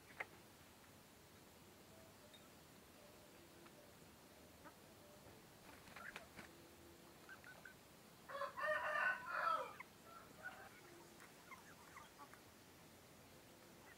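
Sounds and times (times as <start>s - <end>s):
faint clucks and chirps: 0.0s - 13.9s
rooster crowing: 8.3s - 11.0s.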